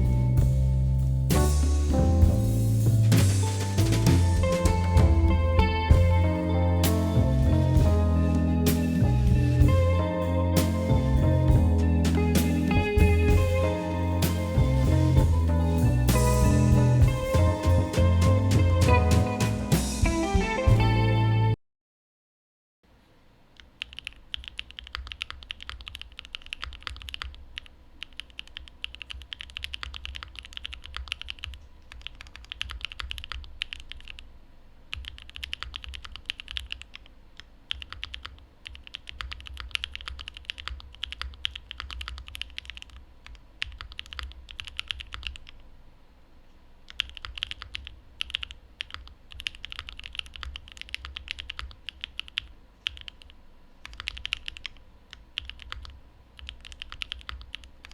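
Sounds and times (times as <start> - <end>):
mechanical keyboard typing: 23.6 - 34.2, 34.9 - 45.6, 46.9 - 57.9.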